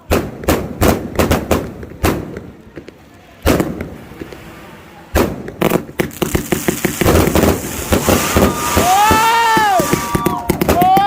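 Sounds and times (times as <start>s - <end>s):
fireworks bangs with echo: 0.0s - 11.0s.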